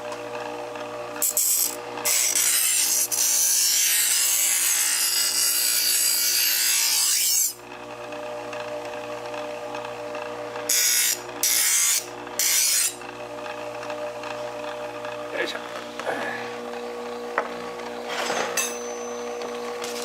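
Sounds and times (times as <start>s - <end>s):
motor hum: 0.0s - 2.2s, 7.4s - 20.0s
blade grinding on whetstone: 1.2s - 7.6s, 10.7s - 13.0s.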